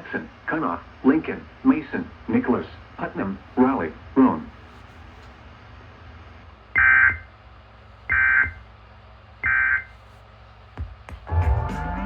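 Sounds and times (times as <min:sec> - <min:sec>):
music: 0:10.8 - 0:12.0.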